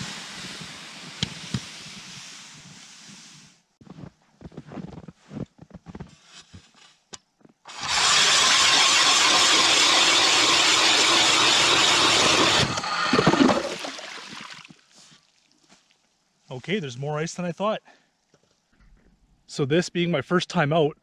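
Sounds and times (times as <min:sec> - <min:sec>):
electric ice auger drilling: 0:07.7 - 0:14.1.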